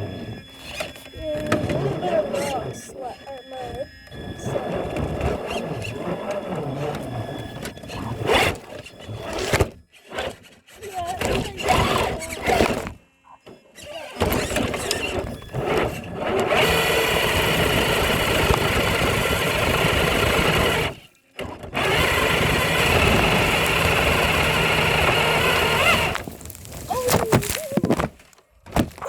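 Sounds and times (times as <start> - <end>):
electric motor and gearbox whirring: 0.0 - 29.0.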